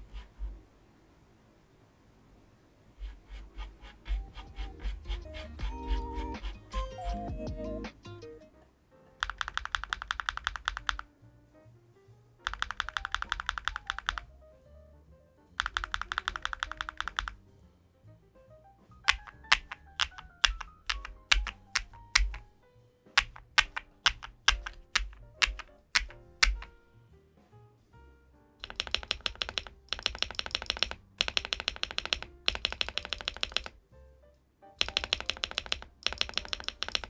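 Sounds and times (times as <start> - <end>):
mechanical keyboard typing: 3.0 - 8.2, 9.2 - 11.1, 12.4 - 14.3, 15.6 - 17.4, 19.1 - 22.5, 23.2 - 26.8, 28.6 - 33.8, 34.8 - 37.0.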